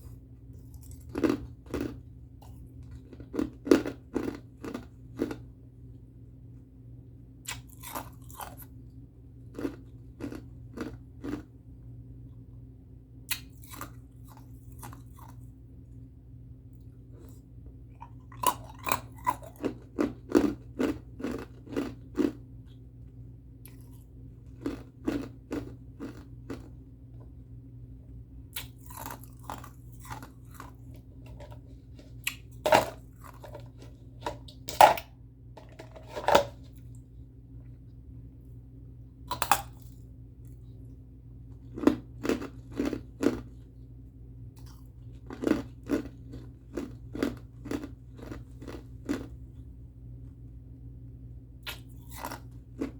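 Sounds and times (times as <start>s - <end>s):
person chewing ice: 0.6s - 5.5s, 7.4s - 8.8s, 9.4s - 11.5s, 13.3s - 15.5s, 18.0s - 22.4s, 23.6s - 26.7s, 28.5s - 35.0s, 39.3s - 40.6s, 41.5s - 43.7s, 44.6s - 49.4s, 51.6s - 52.9s.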